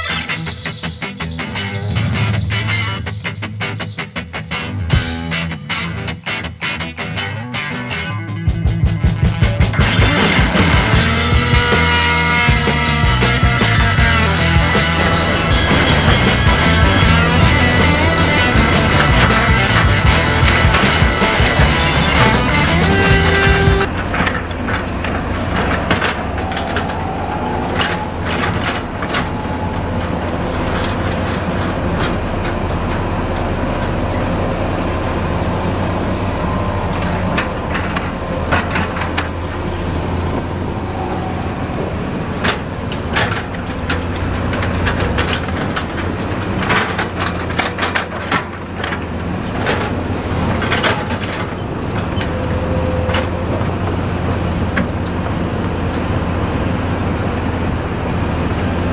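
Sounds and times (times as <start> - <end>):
sharp metallic clanks: 0.0 - 34.2
diesel engines droning: 0.0 - 58.9.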